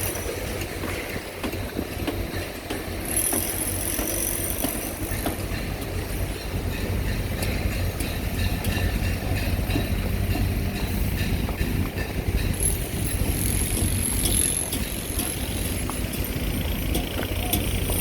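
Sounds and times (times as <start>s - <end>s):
diesel machinery rumbling: 0.0s - 18.0s.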